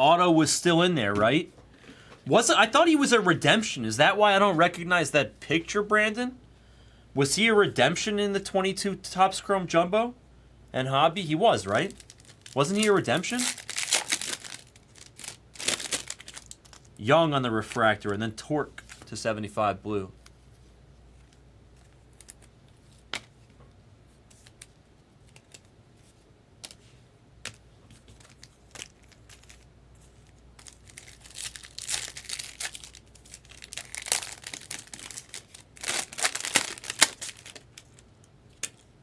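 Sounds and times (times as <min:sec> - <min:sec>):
wrapper tearing and crinkling: 0:11.7 - 0:17.0, 0:28.0 - 0:29.7, 0:30.6 - 0:38.9.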